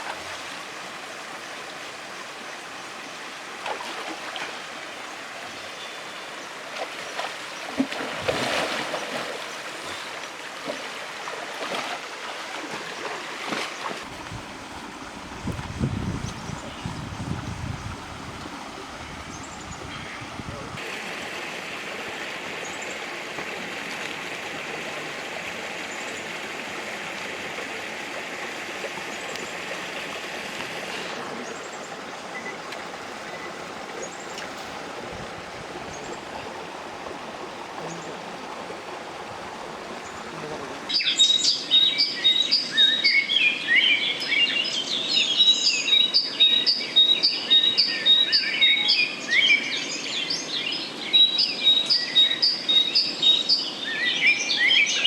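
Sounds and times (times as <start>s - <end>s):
birds chirping: 18.7s - 20.8s.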